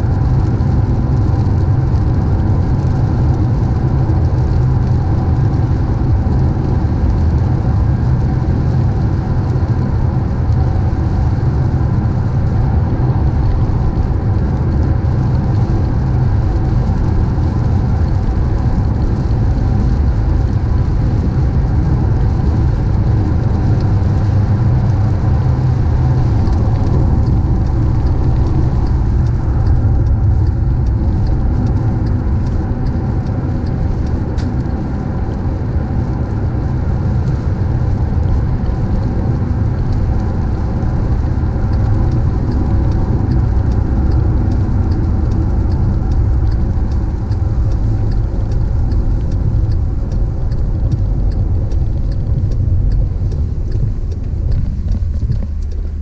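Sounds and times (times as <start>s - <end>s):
car engine and road noise: 0.0s - 56.0s
faint light ticks: 12.4s - 56.0s.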